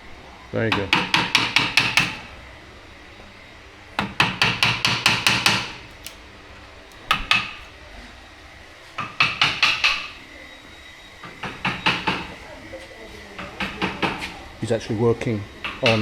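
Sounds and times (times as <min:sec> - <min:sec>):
hammer tapping chisel: 0:00.7 - 0:02.3, 0:04.0 - 0:06.2.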